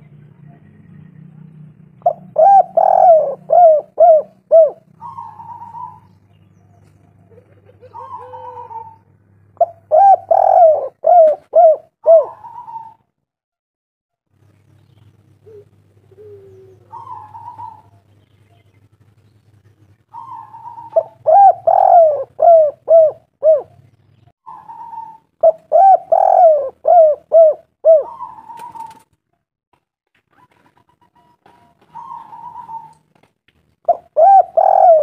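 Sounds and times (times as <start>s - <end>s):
dove cooing: 2.0s - 13.0s, 15.4s - 18.1s, 20.1s - 23.9s, 24.5s - 29.0s, 30.4s - 33.2s, 33.8s - 35.0s.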